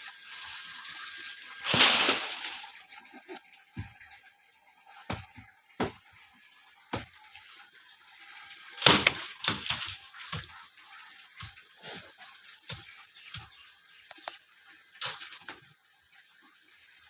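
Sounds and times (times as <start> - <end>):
crash and rustle: 1.6 - 2.8
sharp knocks of tree cutting: 5.1 - 6.0, 8.8 - 10.5.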